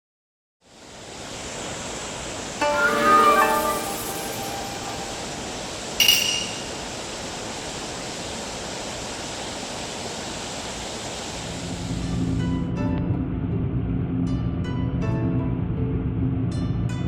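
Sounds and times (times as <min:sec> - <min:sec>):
stream water rushing: 0:00.7 - 0:11.6
bright ringing clink: 0:02.6 - 0:06.8.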